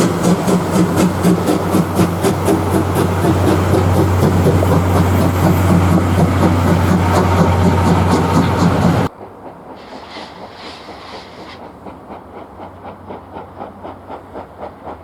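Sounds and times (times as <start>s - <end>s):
steam locomotive running: 0.0s - 15.0s.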